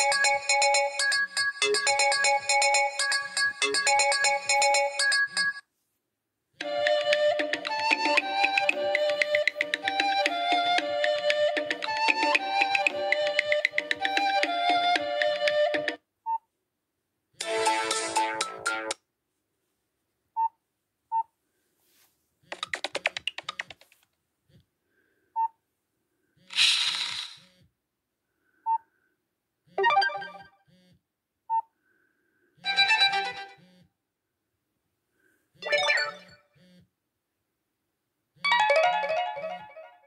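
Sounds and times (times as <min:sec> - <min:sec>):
ringtone snippets from small speaker: 0:00.0 - 0:05.6.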